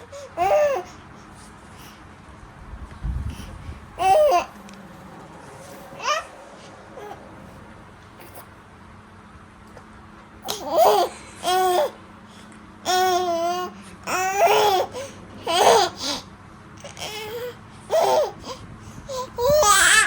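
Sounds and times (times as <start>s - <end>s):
baby cooing and squealing: 19.1s - 20.0s.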